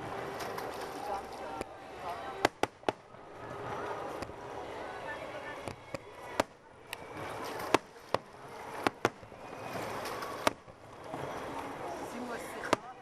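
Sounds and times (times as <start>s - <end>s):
fireworks sharp bangs: 2.3s - 3.2s, 8.8s - 9.4s.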